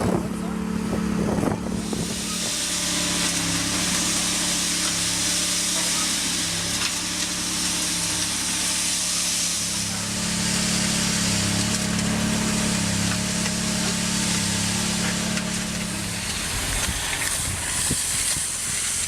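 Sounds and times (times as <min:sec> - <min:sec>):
heavy machinery engine running: 0:00.0 - 0:19.0
strong hiss: 0:01.8 - 0:10.2, 0:16.2 - 0:19.0.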